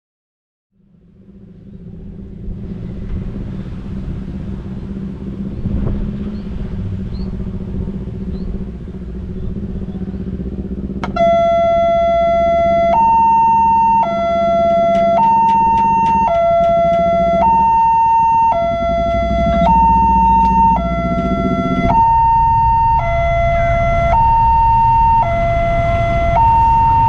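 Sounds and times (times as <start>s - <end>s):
low engine hum: 0.8s - 27.0s
level crossing two-tone alarm: 11.0s - 27.0s.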